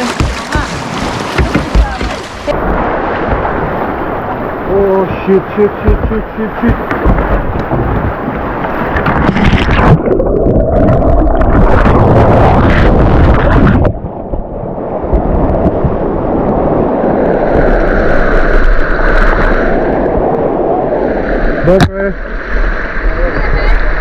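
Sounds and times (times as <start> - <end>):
fast river water rushing: 0.0 - 13.8
wind buffeting microphone: 0.0 - 18.4.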